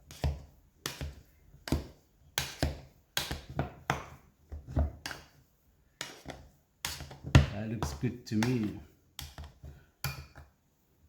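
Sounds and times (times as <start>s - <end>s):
potato masher knocking in saucepan: 6.8s - 9.5s.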